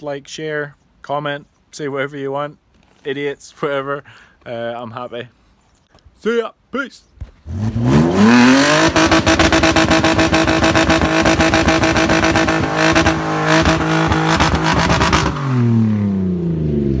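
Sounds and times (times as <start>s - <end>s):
car engine at high revs: 7.5s - 17.0s.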